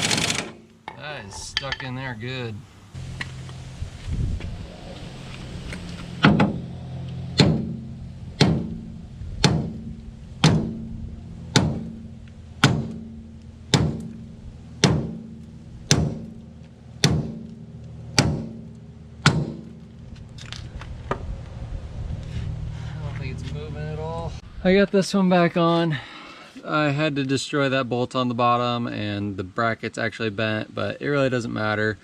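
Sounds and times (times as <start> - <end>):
steady low hum: 0.0 - 24.7.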